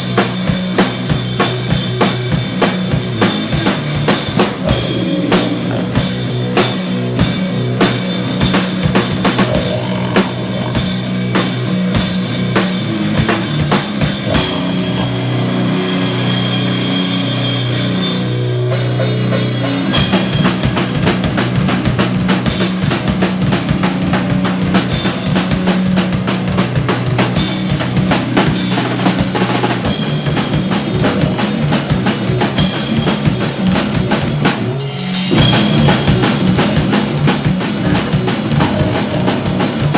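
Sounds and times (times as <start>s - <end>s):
busy drum kit: 0.0s - 39.9s
heavy rock band playing: 0.0s - 39.9s
guttural vocal grunting: 3.1s - 12.1s, 12.9s - 15.8s, 35.4s - 39.9s.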